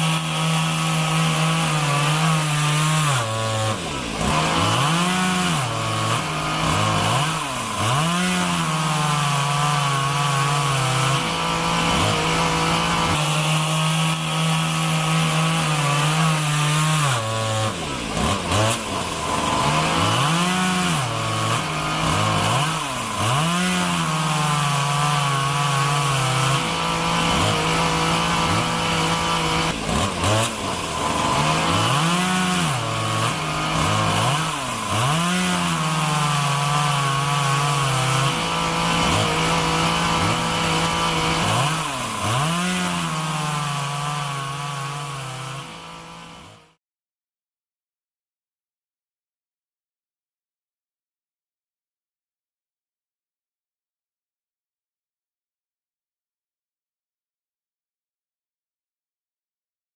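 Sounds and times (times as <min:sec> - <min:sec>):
chainsaw engine revving: 0:00.0 - 0:46.8.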